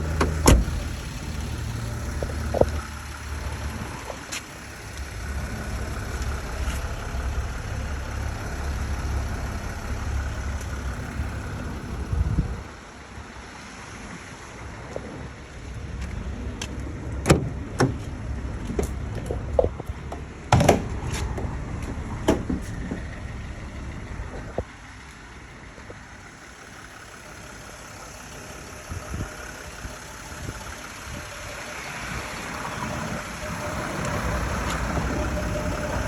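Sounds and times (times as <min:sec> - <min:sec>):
diesel engine idling: 0:00.0 - 0:36.0.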